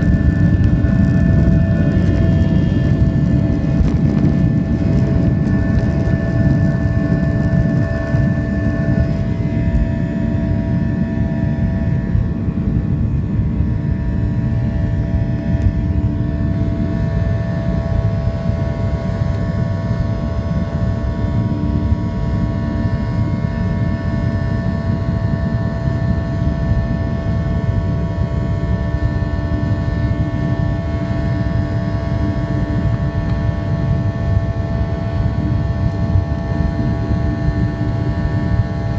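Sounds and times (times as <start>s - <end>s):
jet engines rumbling in cabin: 0.0s - 38.9s
steady humming tones: 0.0s - 38.9s.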